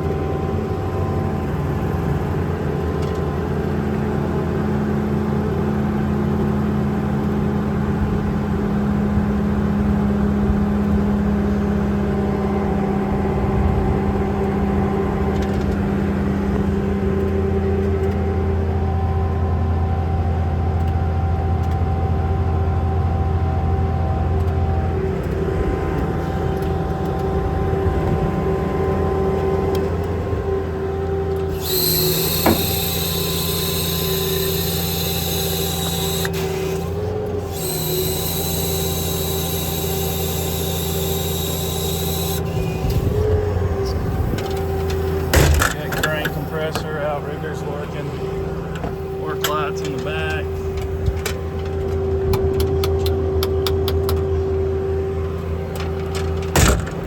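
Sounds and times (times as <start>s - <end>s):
compressor and engine hum: 0.0s - 57.0s
loud air hiss: 31.5s - 43.1s.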